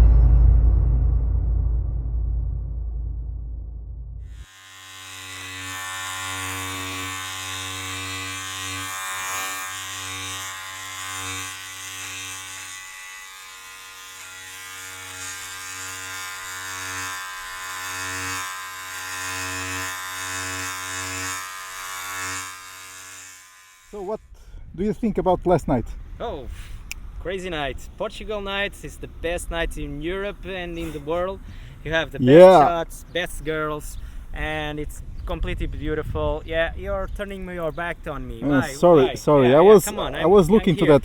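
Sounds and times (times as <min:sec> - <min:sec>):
electric trimmer buzzing: 0:04.3 - 0:24.1, 0:32.2 - 0:32.7, 0:38.4 - 0:41.0.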